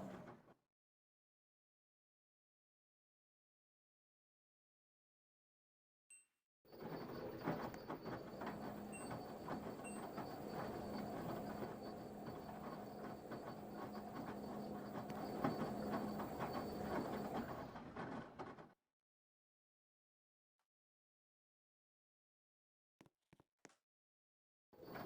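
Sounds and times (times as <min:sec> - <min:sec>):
motor hum: 0:07.8 - 0:17.7.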